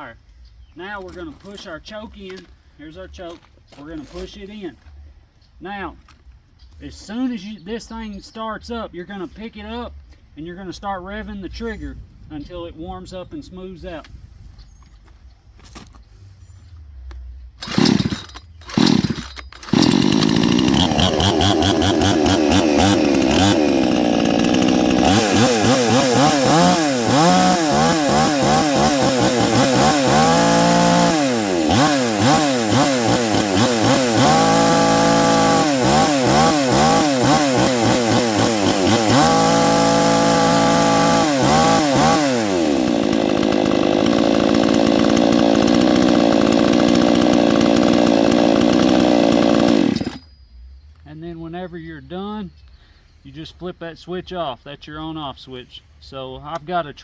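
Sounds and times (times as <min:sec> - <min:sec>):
chainsaw starting and revving: 0:17.6 - 0:50.3.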